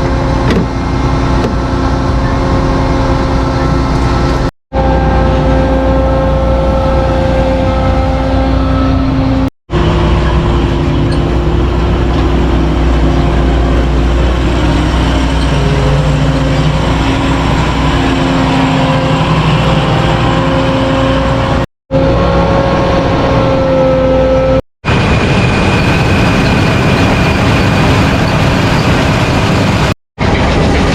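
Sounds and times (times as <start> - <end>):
farm machinery engine running: 0.0 - 30.9.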